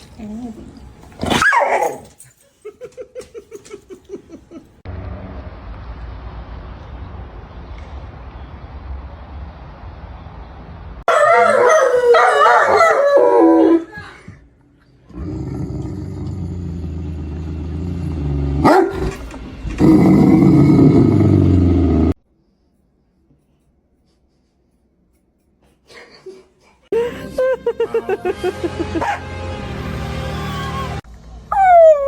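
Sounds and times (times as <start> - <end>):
dog howling: 11.1 - 13.9, 30.1 - 32.0.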